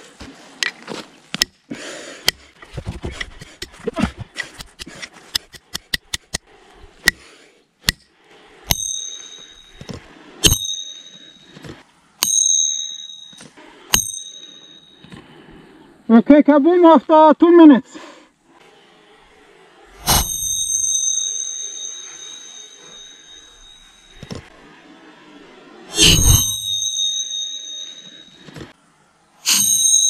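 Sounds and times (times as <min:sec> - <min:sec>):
steel ringing bell-like tone: 0:08.6 - 0:11.6, 0:12.2 - 0:15.2, 0:20.0 - 0:24.6, 0:25.9 - 0:28.8, 0:29.4 - 0:30.0.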